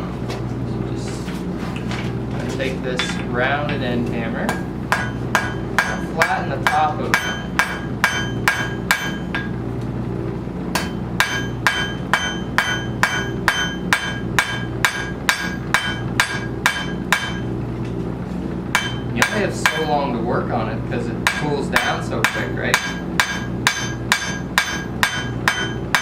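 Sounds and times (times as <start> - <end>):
hammer clanging on anvil: 4.5 - 9.6, 10.8 - 17.5, 18.8 - 20.0, 21.2 - 26.0.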